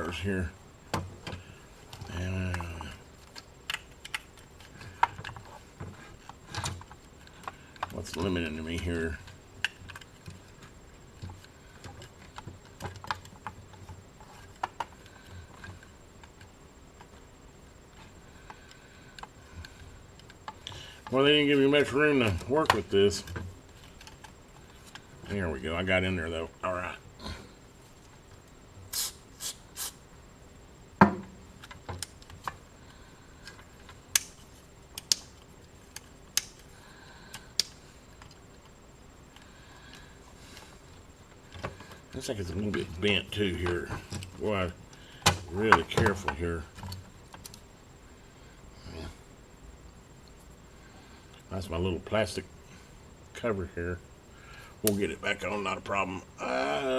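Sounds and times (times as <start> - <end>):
hands and tool clicking: 0.9 - 17.2, 33.4 - 47.6.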